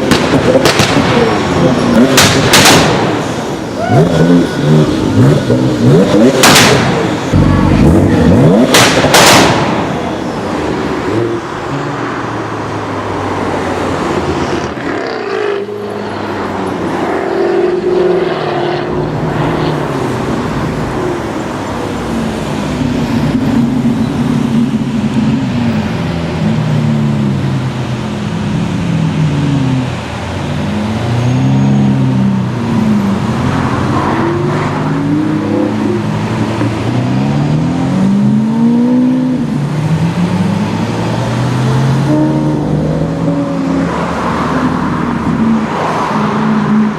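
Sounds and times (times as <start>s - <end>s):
car engine revving: 0.0s - 46.9s.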